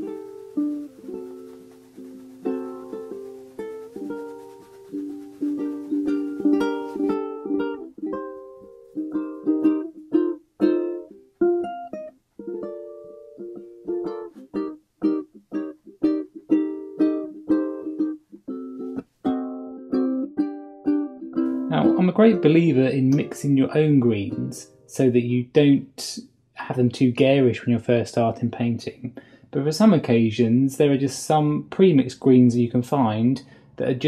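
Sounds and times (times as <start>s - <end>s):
plucked ukulele melody: 0.0s - 25.4s.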